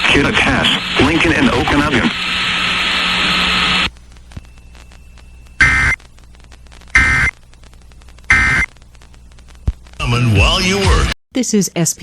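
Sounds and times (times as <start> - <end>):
buzzing digital code bursts: 5.6 - 6.0, 6.9 - 7.4, 8.3 - 8.7.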